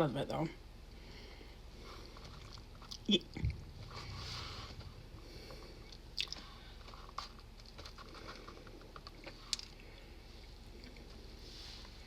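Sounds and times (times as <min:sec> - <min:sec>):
person chewing: 0:02.0 - 0:03.6, 0:05.4 - 0:11.2.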